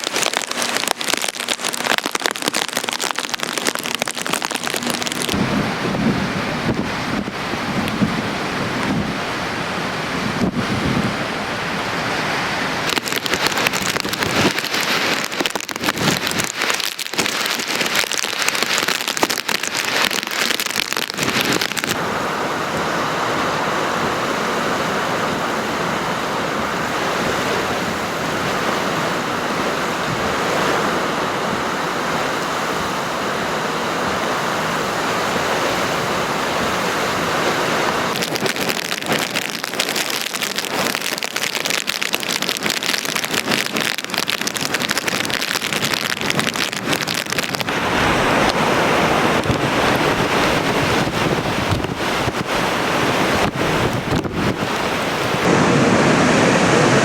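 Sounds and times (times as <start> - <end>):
wind and rain roaring: 0.0 - 57.0
wind gusts buffeting microphone: 4.6 - 19.1, 42.3 - 57.0.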